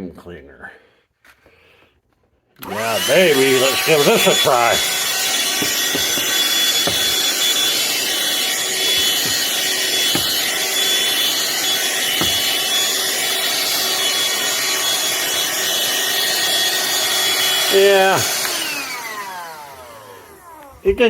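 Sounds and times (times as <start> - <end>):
nozzle scraping on carpet: 2.6 - 17.0
handheld vacuum whining: 2.6 - 21.0.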